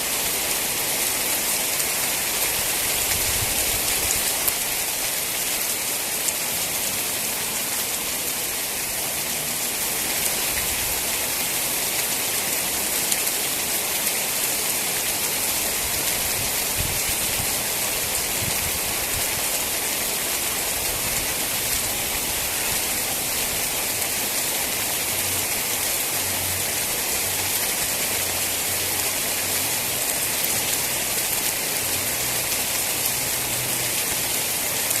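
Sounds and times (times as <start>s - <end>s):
steady rain falling: 0.0s - 35.0s.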